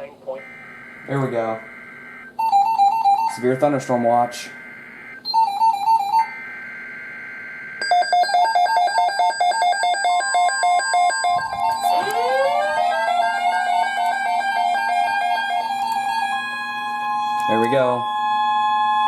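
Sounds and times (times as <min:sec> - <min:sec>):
steady alert tone: 0:00.3 - 0:18.0
warbling two-note electronic alarm: 0:00.3 - 0:19.0
rising siren-like sweeps: 0:11.0 - 0:19.0.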